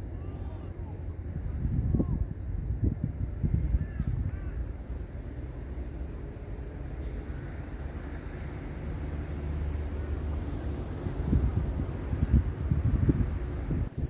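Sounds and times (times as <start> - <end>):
wind blowing across microphone: 0.0 - 5.2, 10.4 - 14.0.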